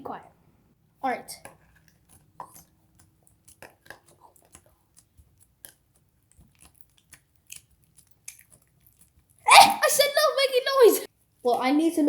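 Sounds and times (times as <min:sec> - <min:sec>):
slime squishing and crackling: 0:01.4 - 0:09.4.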